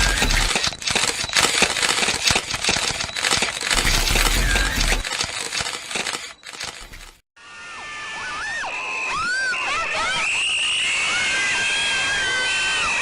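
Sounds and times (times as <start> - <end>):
crashing and breaking clatter: 0.0 - 6.0
sharp clicks: 0.0 - 7.2.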